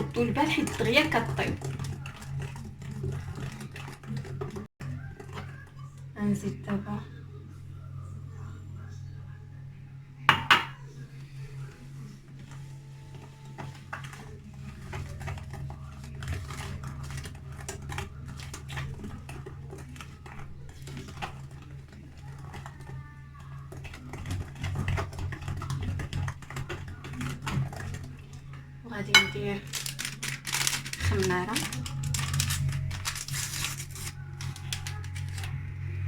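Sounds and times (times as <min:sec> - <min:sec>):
ticks and scrapes in bowl: 0:00.0 - 0:06.1, 0:10.3 - 0:35.8.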